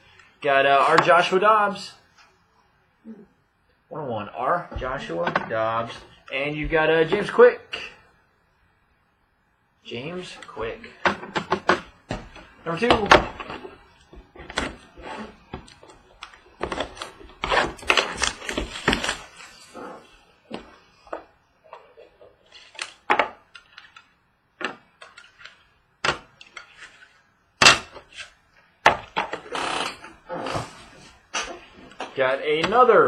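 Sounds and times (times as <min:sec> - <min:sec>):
cards rustling: 0:11.4 - 0:19.8, 0:22.5 - 0:24.2, 0:24.9 - 0:27.2.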